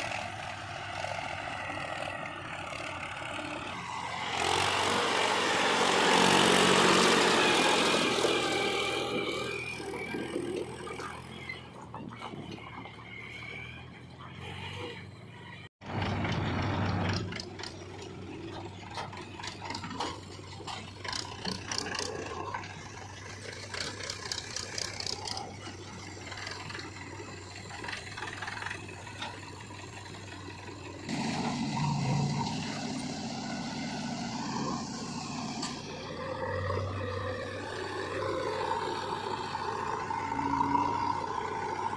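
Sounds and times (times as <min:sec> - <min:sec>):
backhoe diesel engine running: 0:00.0 - 0:41.9
metallic clatter and scraping: 0:08.8 - 0:33.6.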